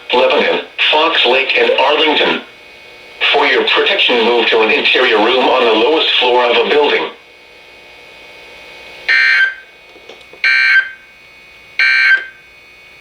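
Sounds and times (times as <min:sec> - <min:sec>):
faint radio background: 0:00.0 - 0:02.5, 0:03.1 - 0:08.0
digital data tone bursts: 0:09.1 - 0:09.7.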